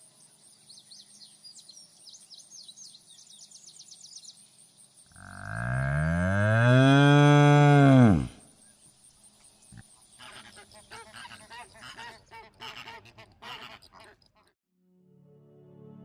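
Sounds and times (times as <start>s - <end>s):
cow mooing: 5.2s - 8.4s.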